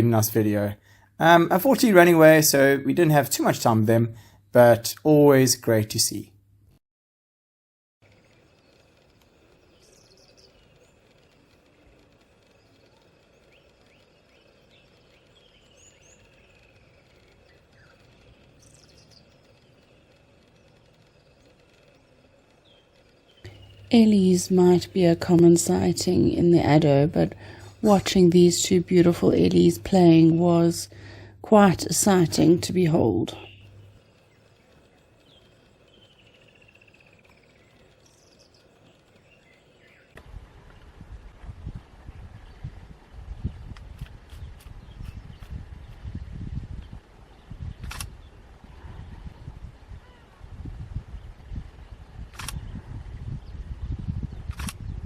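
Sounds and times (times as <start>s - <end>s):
low steady background: 0.0s - 6.8s, 8.0s - 55.0s
descending pulsed bird trill: 8.1s - 40.1s
faint bird calls: 47.3s - 50.5s.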